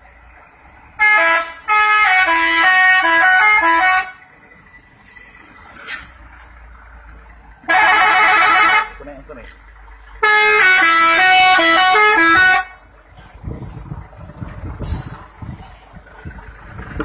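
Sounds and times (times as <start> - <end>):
musical vehicle horn tune: 1.0 - 4.2, 7.7 - 9.0, 10.2 - 12.8.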